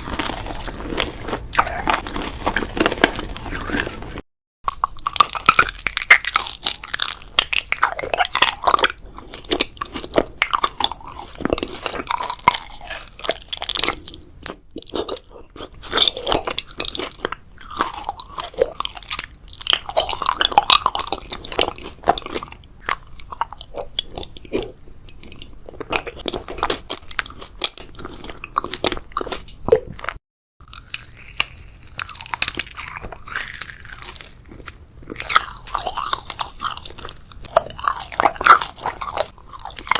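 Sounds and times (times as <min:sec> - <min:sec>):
wet mouth sounds: 0:00.0 - 0:08.3
chewing and crunching food: 0:00.0 - 0:39.9.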